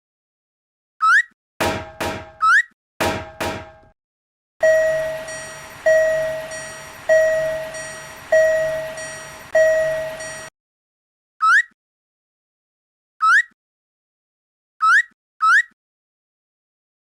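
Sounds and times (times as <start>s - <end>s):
railroad crossing warning bell: 4.6s - 10.5s.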